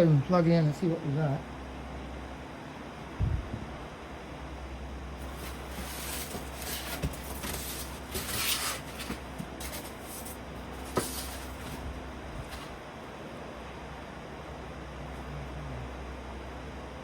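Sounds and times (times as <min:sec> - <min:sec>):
steady low hum: 0:00.0 - 0:17.0
handling rustling and clicks: 0:05.2 - 0:12.8.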